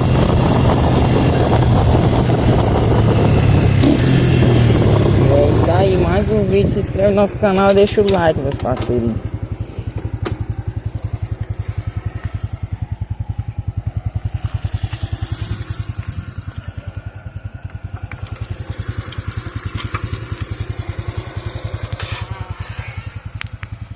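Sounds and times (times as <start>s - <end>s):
motorcycle engine running: 0.0s - 23.9s.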